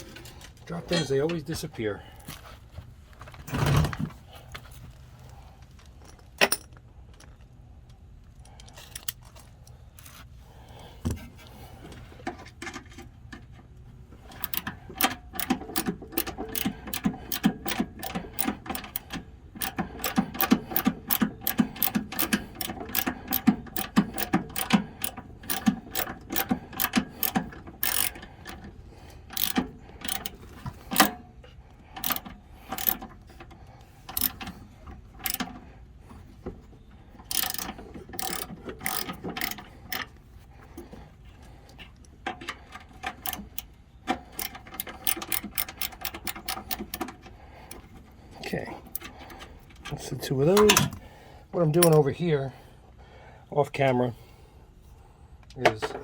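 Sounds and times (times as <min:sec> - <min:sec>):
ratchet wrench clicking: 0:14.2 - 0:28.7, 0:29.3 - 0:31.2, 0:32.0 - 0:33.0, 0:34.1 - 0:34.6, 0:35.2 - 0:35.6, 0:37.2 - 0:40.1, 0:43.1 - 0:47.8, 0:51.8 - 0:52.0.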